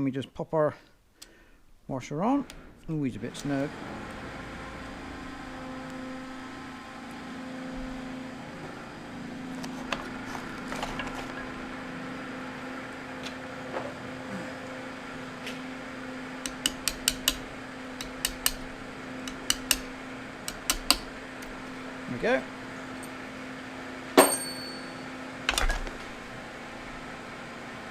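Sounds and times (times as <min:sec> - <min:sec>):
steady low hum: 0:00.9 - 0:27.9
sharp metal clicks and taps: 0:16.4 - 0:21.1.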